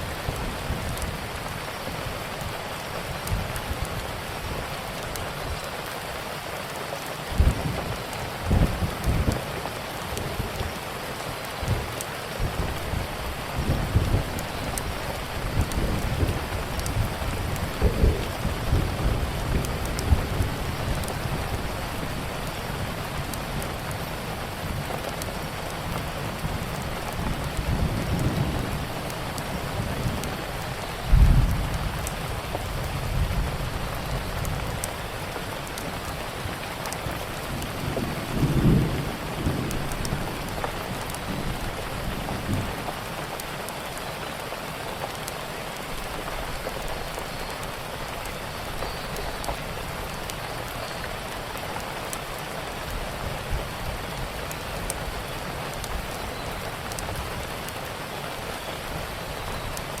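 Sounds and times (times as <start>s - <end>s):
heavy rain: 0.0s - 60.0s
low thunder rumbling: 12.4s - 25.5s, 37.1s - 42.8s.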